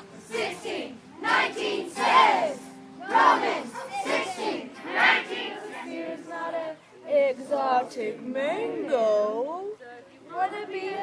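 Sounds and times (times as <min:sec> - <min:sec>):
group singing: 0:00.0 - 0:07.8, 0:10.3 - 0:11.0
children shouting and yelling: 0:00.2 - 0:07.1.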